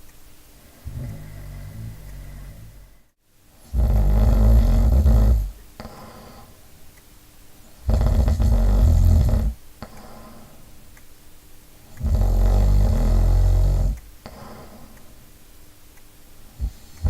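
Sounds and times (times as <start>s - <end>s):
soft breathing: 0.6s - 3.2s, 5.3s - 6.8s, 7.6s - 11.0s, 12.8s - 15.4s, 16.4s - 17.0s
person snoring: 0.8s - 3.1s, 3.7s - 6.6s, 7.8s - 10.5s, 12.0s - 15.0s, 16.6s - 17.0s.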